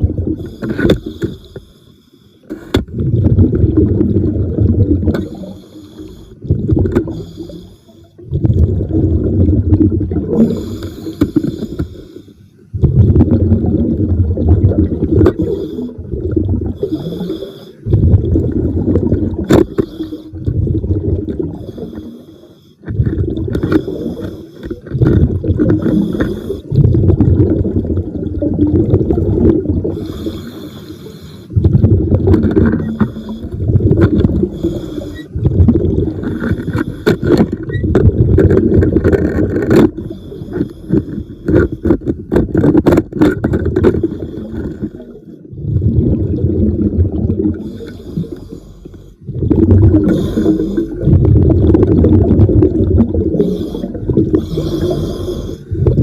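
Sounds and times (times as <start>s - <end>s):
gurgling exhaled bubbles: 0.0s - 1.2s, 2.8s - 12.0s, 12.7s - 30.9s, 31.5s - 48.6s, 49.2s - 56.0s
hissing regulator inhalations: 5.3s - 6.4s, 10.4s - 12.6s, 16.8s - 17.9s, 19.6s - 20.4s, 25.8s - 26.8s, 29.9s - 31.6s, 34.5s - 35.4s, 47.6s - 49.2s, 50.0s - 51.1s, 53.3s - 55.8s.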